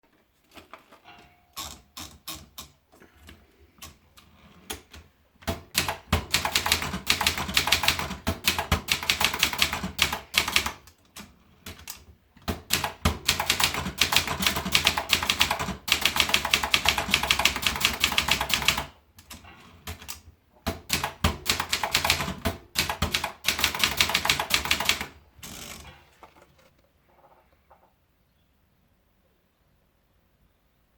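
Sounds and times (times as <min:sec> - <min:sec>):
typewriter typing: 0:03.8 - 0:26.0.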